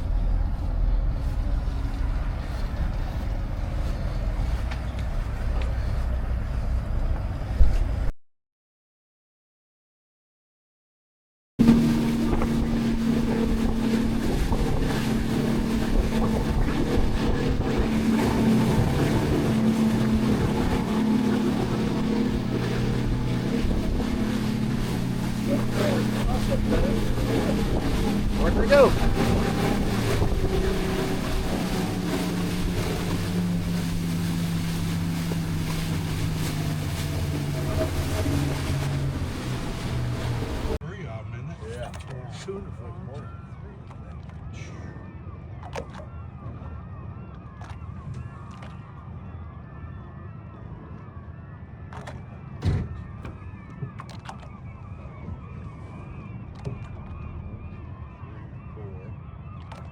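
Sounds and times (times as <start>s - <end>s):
boat engine humming: 0.0s - 8.1s, 11.6s - 59.9s
wind buffeting microphone: 0.0s - 8.1s, 11.6s - 59.9s.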